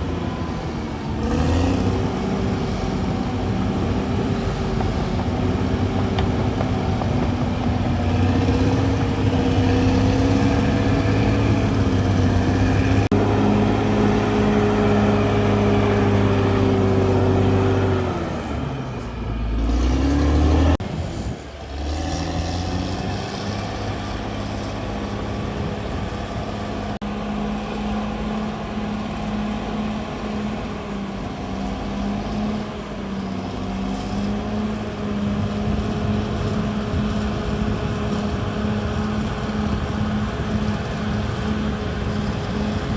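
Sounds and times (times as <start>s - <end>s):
bulldozer diesel engine running: 0.0s - 42.9s.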